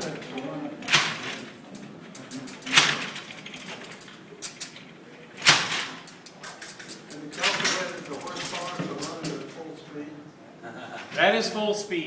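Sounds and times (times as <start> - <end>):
mechanical machine clanking: 0.0 - 9.5.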